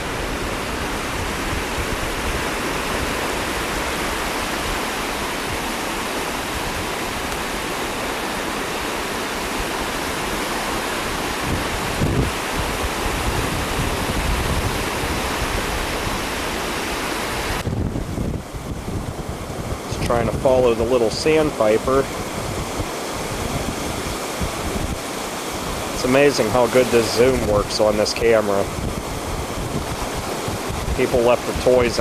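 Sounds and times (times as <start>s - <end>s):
ocean surf: 0.0s - 32.0s
wind buffeting microphone: 0.0s - 32.0s.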